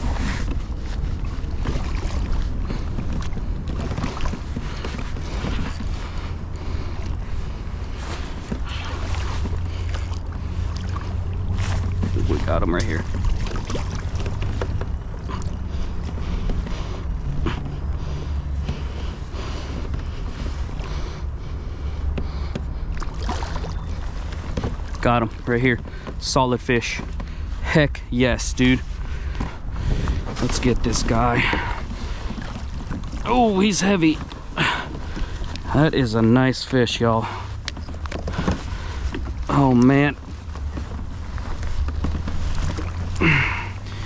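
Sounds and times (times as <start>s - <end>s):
water splashes and ticks: 0.0s - 21.1s, 22.0s - 44.0s
wind buffeting microphone: 28.0s - 36.2s.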